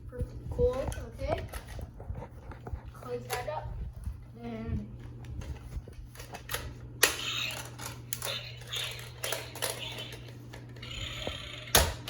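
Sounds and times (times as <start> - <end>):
plastic toy clicking and rattling: 6.5 - 11.9.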